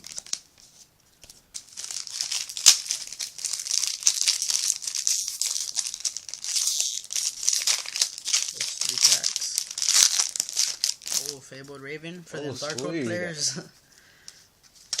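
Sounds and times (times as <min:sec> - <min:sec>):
foil wrapper crinkling: 0:00.0 - 0:00.6, 0:01.2 - 0:11.7, 0:12.5 - 0:13.4, 0:14.8 - 0:15.0
foil tearing snap: 0:01.8 - 0:11.4.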